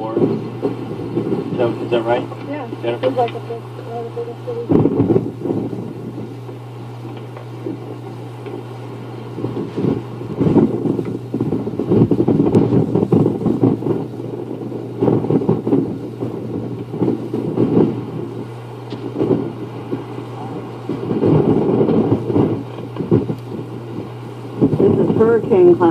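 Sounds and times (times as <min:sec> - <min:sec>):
low hum: 0:00.0 - 0:25.9
wind buffeting microphone: 0:00.0 - 0:25.9.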